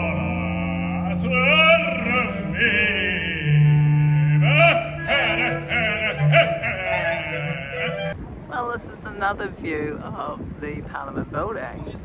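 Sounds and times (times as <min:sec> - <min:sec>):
voices singing with vibrato: 0:00.0 - 0:08.2.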